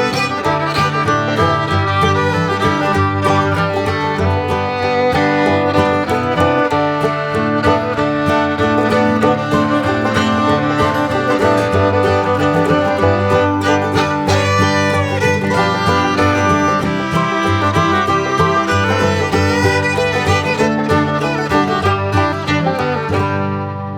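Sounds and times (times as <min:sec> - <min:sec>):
bluegrass music: 0:00.0 - 0:23.9.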